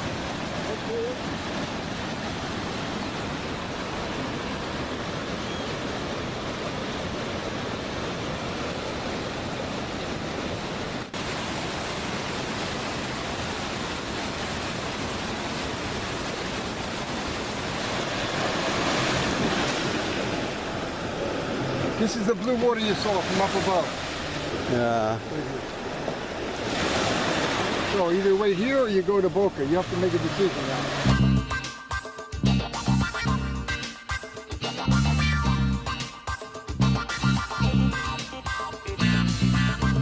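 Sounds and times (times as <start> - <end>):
waterfall rushing: 0.0 - 31.7.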